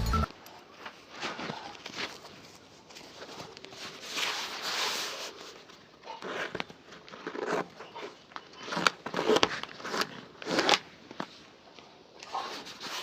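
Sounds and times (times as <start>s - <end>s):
rubbing and brushing strokes: 1.1s - 6.4s, 12.3s - 13.0s.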